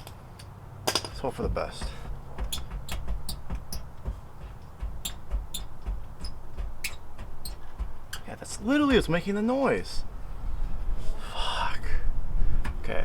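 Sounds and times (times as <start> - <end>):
dull low thumps: 1.2 - 11.1.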